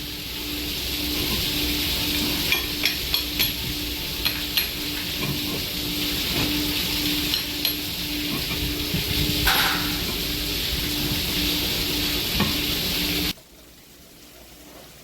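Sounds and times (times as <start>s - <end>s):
pulsing low hum: 0.0s - 13.4s
steady hissing: 0.0s - 15.0s.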